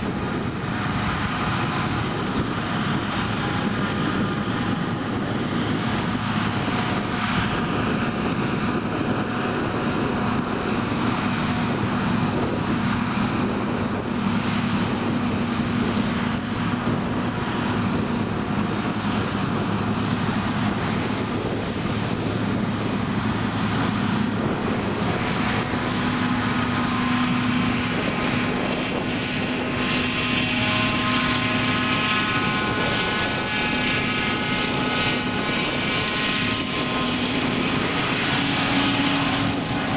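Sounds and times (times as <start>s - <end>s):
forage harvester chopping: 21.9s - 39.9s.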